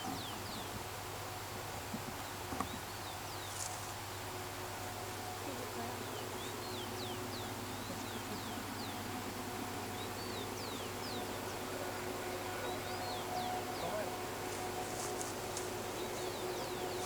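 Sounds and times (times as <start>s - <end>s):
steady low hum: 0.0s - 17.0s
small birds chirping: 2.2s - 4.3s, 5.8s - 9.2s, 9.8s - 17.0s.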